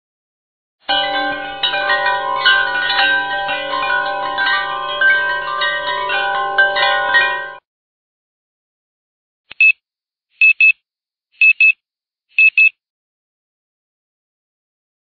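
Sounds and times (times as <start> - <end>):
metal chimes ringing: 0.9 - 7.6.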